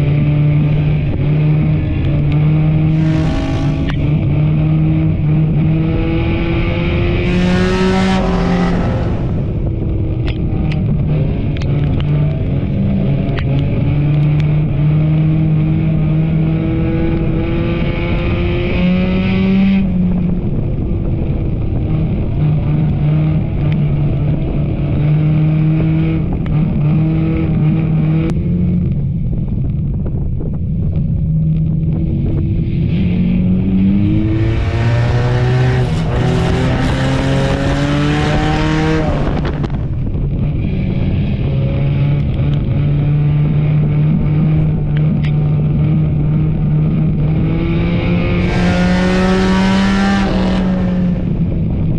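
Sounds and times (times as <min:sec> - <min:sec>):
race car engine revving: 0:00.0 - 0:20.6, 0:32.3 - 0:51.9.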